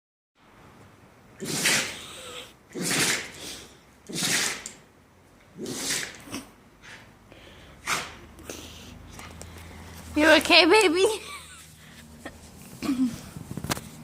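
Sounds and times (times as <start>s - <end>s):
pet snorting: 1.4s - 4.8s, 5.6s - 7.1s
pet sneezing: 1.4s - 4.9s, 5.6s - 7.1s, 7.8s - 8.3s.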